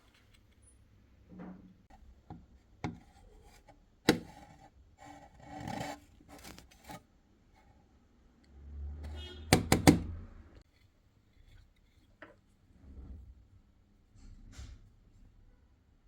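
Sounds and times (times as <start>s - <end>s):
scraping and rubbing: 3.0s - 7.7s
small clicks and rubs: 5.6s - 7.0s.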